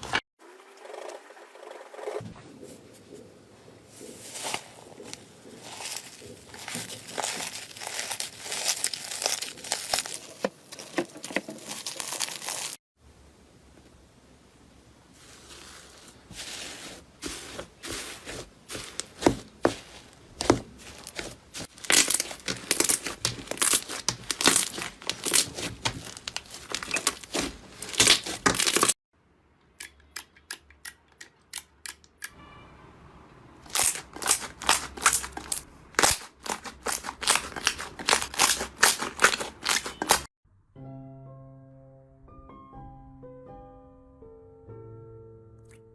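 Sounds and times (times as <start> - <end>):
slime crackling and popping: 5.6 - 11.0, 20.4 - 29.0, 33.7 - 40.3.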